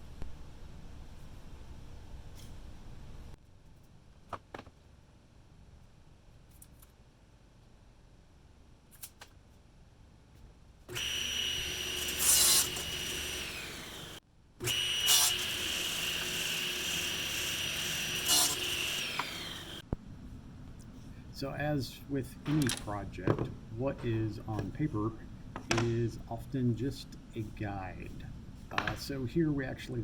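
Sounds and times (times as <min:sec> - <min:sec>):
electric power saw cutting wood: 0:10.9 - 0:19.8.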